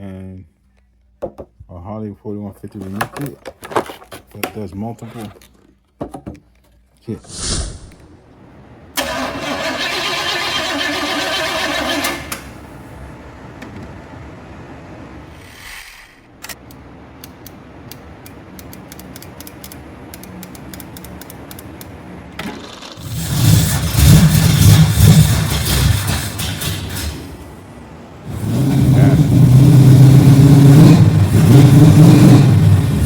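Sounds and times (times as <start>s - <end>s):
engine revving: 8.9s - 12.8s, 22.6s - 27.6s, 28.2s - 33.0s
sharp light clicks: 16.4s - 22.0s.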